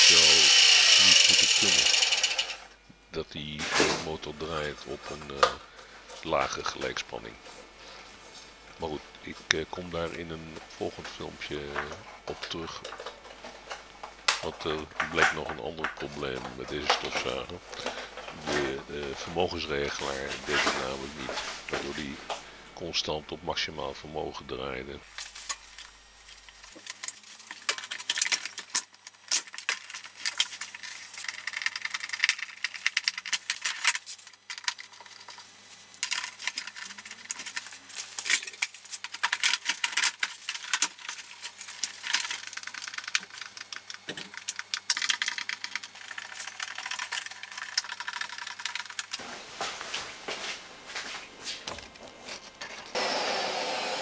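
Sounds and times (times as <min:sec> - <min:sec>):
faint steady hum: 0:00.0 - 0:54.0
small hard objects clicking and rattling: 0:25.1 - 0:49.2.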